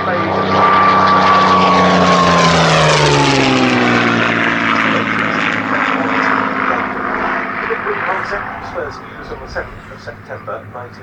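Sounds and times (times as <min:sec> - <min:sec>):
piston aircraft engines droning: 0:00.0 - 0:11.0.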